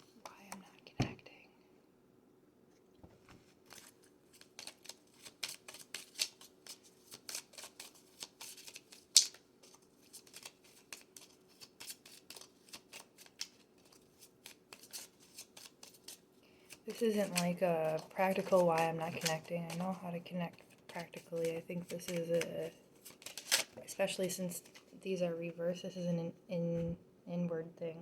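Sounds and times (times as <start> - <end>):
cards shuffling by hand: 3.4 - 25.0.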